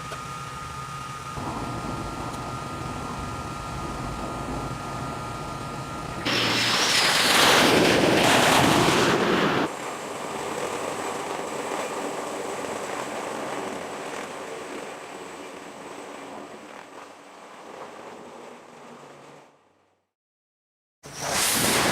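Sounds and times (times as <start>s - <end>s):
heavy seas rushing: 1.4s - 10.1s
storm wind: 1.4s - 16.7s.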